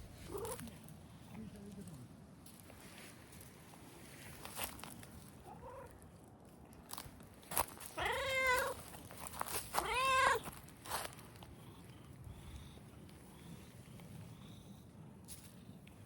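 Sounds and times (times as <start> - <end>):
cat meowing: 8.0 - 8.8, 9.7 - 10.4.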